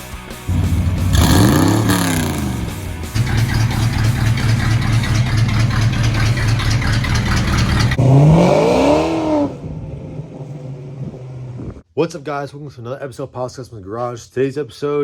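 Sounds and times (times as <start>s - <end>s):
engine running steadily: 0.5s - 8.0s
engine revving: 0.5s - 11.8s.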